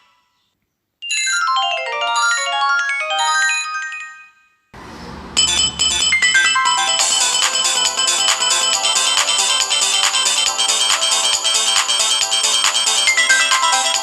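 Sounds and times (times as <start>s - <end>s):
drum-like hits: 4.8s - 6.6s
bass line: 4.8s - 6.8s.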